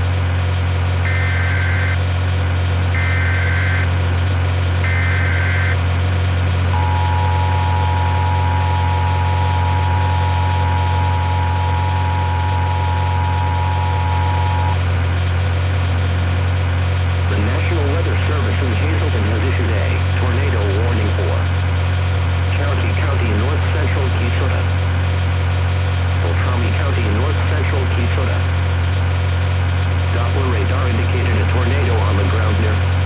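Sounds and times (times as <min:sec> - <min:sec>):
low engine hum: 0:00.0 - 0:33.0
two-tone attention signal: 0:01.1 - 0:02.0, 0:03.0 - 0:04.0, 0:04.8 - 0:05.8, 0:06.7 - 0:14.8.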